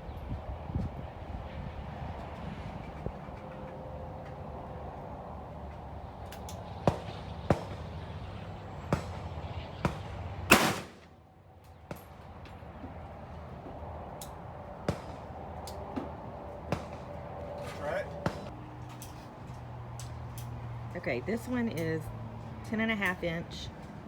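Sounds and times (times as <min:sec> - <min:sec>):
rifle shots: 0:06.8 - 0:08.0, 0:09.8 - 0:11.1.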